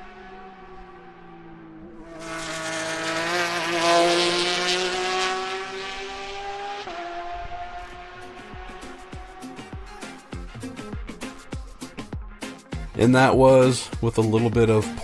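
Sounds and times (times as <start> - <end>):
race car engine revving high: 0.0 - 9.7.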